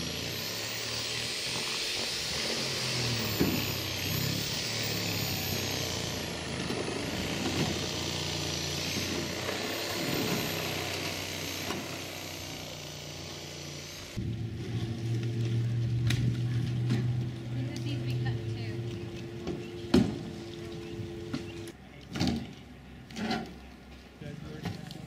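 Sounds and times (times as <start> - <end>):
engine running: 0.0 - 21.8.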